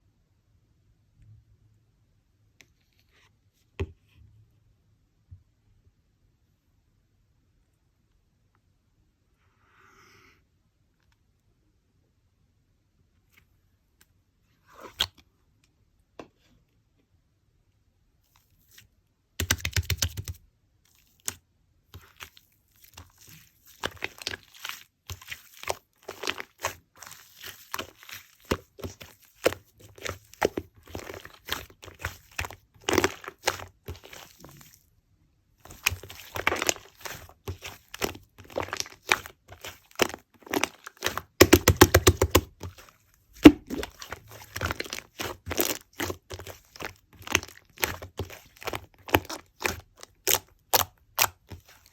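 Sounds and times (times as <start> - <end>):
slime squelching: 19.4 - 34.9, 35.5 - 51.9
slime squishing and clicking: 23.8 - 34.7, 35.6 - 51.9.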